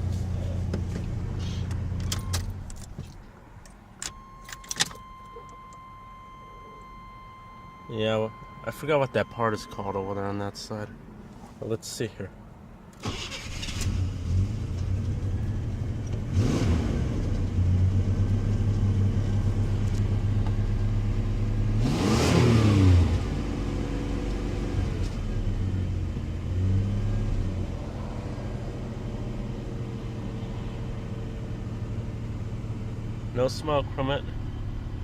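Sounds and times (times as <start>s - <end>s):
engine revving and idling: 13.1s - 35.0s.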